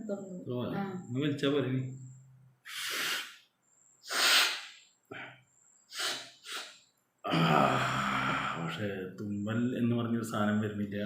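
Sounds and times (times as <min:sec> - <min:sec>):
person speaking: 0:00.0 - 0:01.9
person sniffing through nose: 0:02.6 - 0:06.9.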